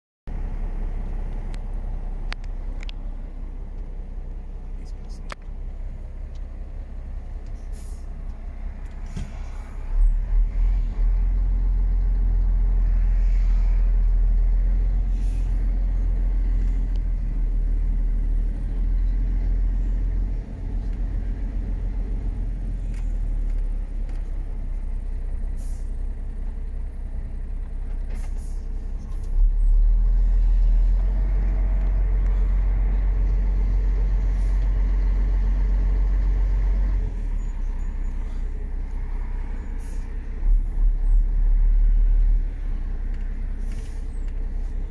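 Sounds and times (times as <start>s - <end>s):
diesel truck engine drone: 0.3s - 44.9s.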